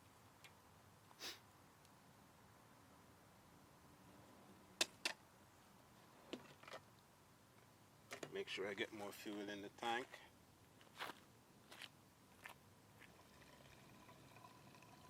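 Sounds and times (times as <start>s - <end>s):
soft rustle: 10.0s - 13.2s.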